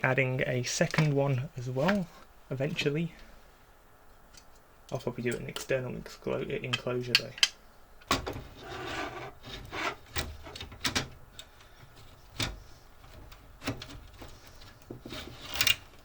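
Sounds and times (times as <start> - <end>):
hard drive scraping against case: 8.4 - 10.8.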